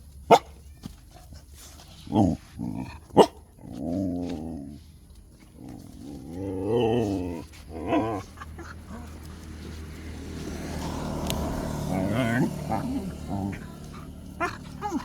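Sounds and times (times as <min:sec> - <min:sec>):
dog barks: 0:00.3 - 0:00.6, 0:03.1 - 0:03.5, 0:10.4 - 0:15.0
dogs play-growling: 0:01.7 - 0:15.0.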